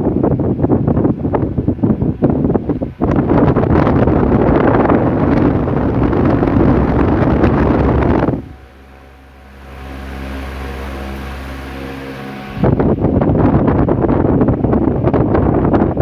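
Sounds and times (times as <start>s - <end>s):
fan airflow rushing on microphone: 0.0s - 16.0s
fan motor hum: 0.0s - 16.0s.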